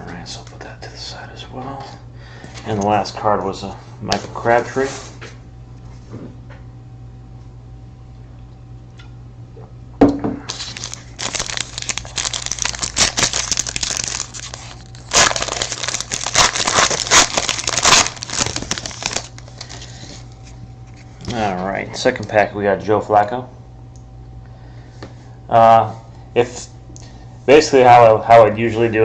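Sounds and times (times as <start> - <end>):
wrapper crinkling: 10.5 - 20.6
wrapper torn open: 10.5 - 20.6.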